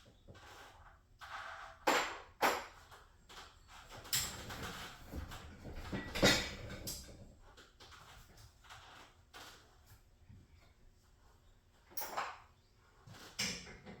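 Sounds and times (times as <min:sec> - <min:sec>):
knocks and clanks of metal spring: 0:04.1 - 0:07.2.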